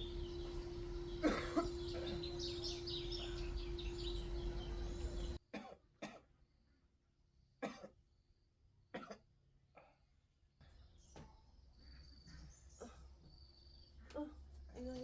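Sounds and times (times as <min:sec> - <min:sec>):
birds chirping: 0:00.0 - 0:05.4, 0:10.6 - 0:15.0
man coughing: 0:01.2 - 0:02.4.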